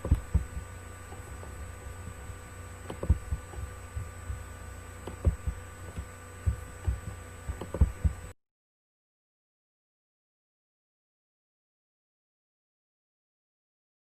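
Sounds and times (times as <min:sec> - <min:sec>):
low thumps and knocks: 0:00.0 - 0:08.3
electrical hum with whining tones: 0:00.0 - 0:08.4.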